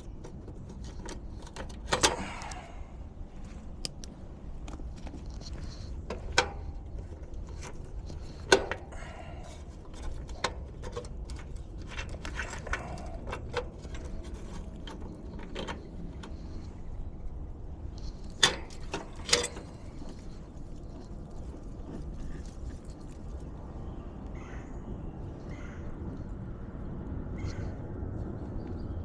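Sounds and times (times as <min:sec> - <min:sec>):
hand tools clicking and clanking: 0:00.0 - 0:02.8, 0:03.8 - 0:23.2
low steady rumble: 0:00.0 - 0:29.0.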